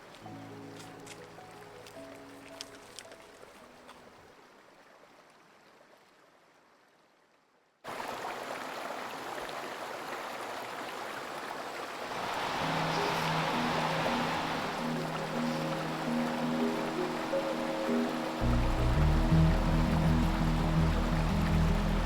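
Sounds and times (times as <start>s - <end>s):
music: 0.0s - 4.1s, 12.5s - 22.0s
flowing stream: 0.0s - 22.0s.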